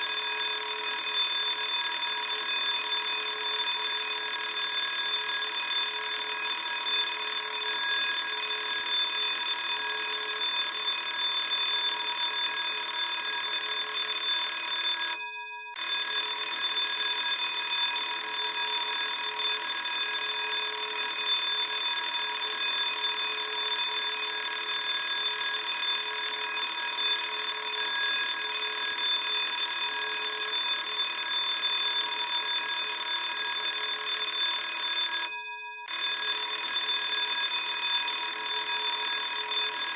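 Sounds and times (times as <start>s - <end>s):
electric school bell ringing: 0.0s - 39.9s.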